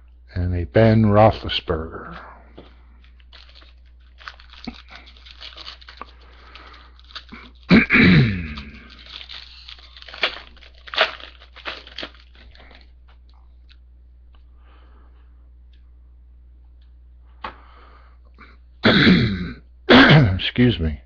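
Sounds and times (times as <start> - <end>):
cards being handled: 2.6 - 7.7
foil wrappers crinkling: 2.6 - 13.3
person coughing: 7.4 - 9.0, 18.8 - 20.5.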